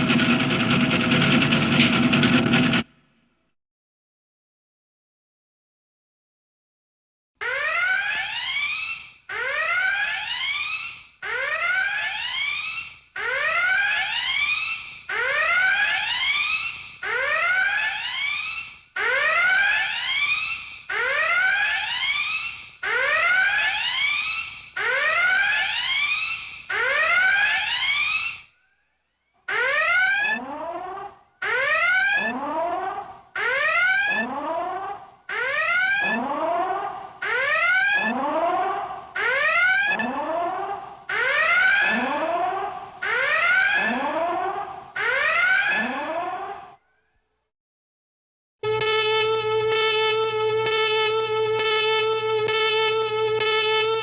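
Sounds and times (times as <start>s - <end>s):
whooping alert klaxon: 48.6s - 54.0s.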